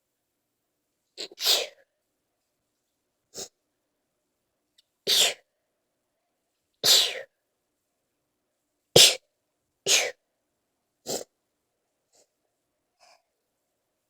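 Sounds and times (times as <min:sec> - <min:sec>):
person sneezing: 0:01.2 - 0:01.8, 0:05.1 - 0:05.5, 0:06.8 - 0:07.3, 0:09.0 - 0:09.2, 0:09.9 - 0:10.2, 0:11.1 - 0:11.3.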